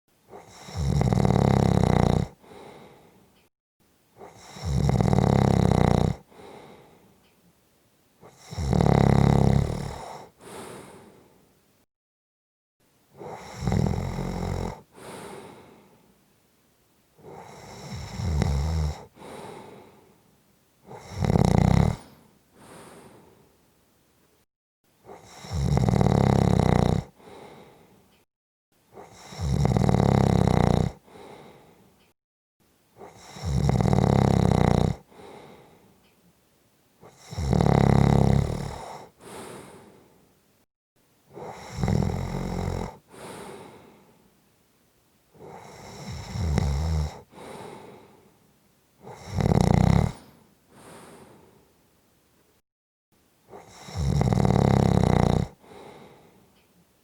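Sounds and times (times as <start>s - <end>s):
person snoring: 0.3s - 3.2s, 4.2s - 7.0s, 8.2s - 11.4s, 13.2s - 16.0s, 17.2s - 20.1s, 20.8s - 23.4s, 25.1s - 27.8s, 29.0s - 31.7s, 33.0s - 35.8s, 37.0s - 40.2s, 41.3s - 44.1s, 45.4s - 48.3s, 49.0s - 51.6s, 53.5s - 56.3s.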